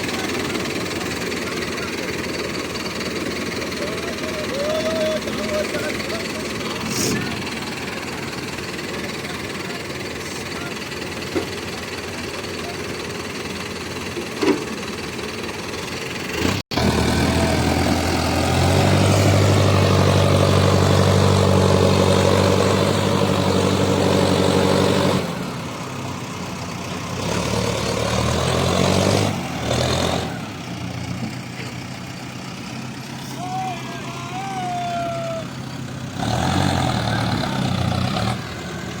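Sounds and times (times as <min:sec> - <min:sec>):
heavy diesel engine running: 0:00.0 - 0:39.0.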